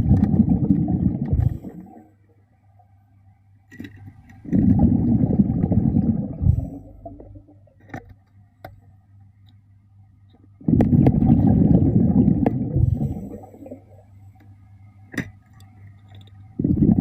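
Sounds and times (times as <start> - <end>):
underwater breath bubbling: 0.0 - 2.2, 4.4 - 7.5, 10.6 - 14.1, 16.6 - 17.0
faint steady hum: 0.0 - 17.0.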